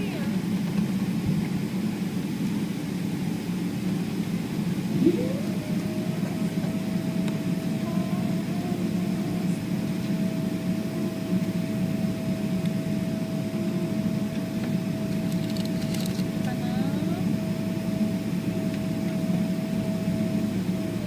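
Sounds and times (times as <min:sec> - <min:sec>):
airliner cabin rumble: 0:00.0 - 0:21.0
steady whine: 0:00.0 - 0:21.0.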